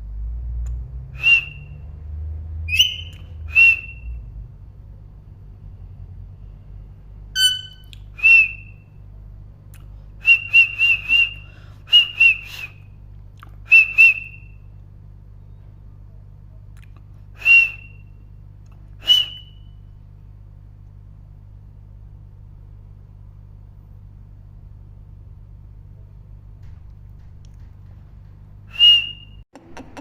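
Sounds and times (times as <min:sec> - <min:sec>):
steady low hum: 0:00.0 - 0:30.0
parrot sharp chirps: 0:02.7 - 0:03.2, 0:07.4 - 0:07.9.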